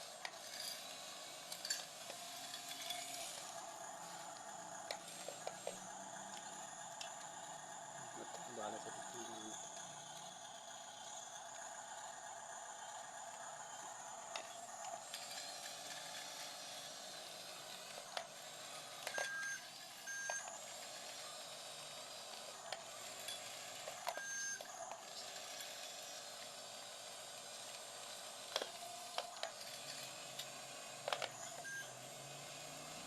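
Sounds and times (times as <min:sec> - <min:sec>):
short electronic beeps: 0:24.2 - 0:24.6, 0:31.6 - 0:31.9.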